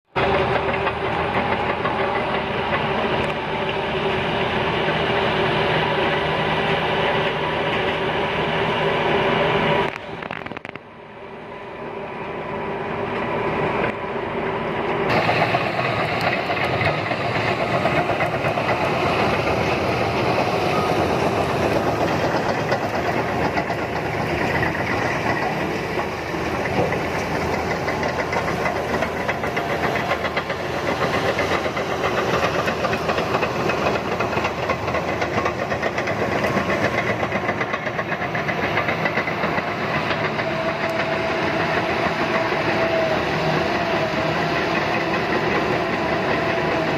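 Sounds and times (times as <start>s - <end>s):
bulldozer diesel engine droning: 0.1s - 46.9s.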